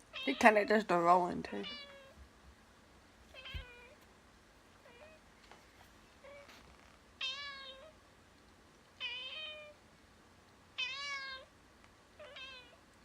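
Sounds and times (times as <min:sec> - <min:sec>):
cat meowing: 0:01.6 - 0:02.2, 0:03.3 - 0:04.0, 0:04.8 - 0:05.2, 0:07.2 - 0:08.0, 0:09.0 - 0:09.8, 0:10.8 - 0:11.5, 0:12.2 - 0:12.8.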